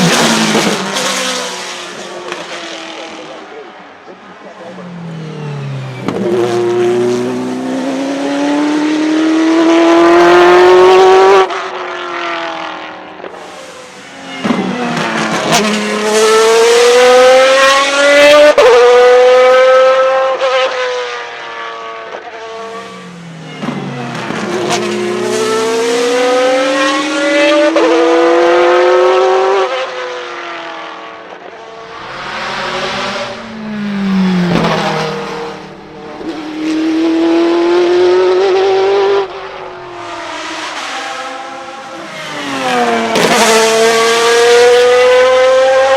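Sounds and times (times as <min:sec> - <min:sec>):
race car engine accelerating: 0:00.0 - 0:20.9, 0:22.4 - 0:45.9.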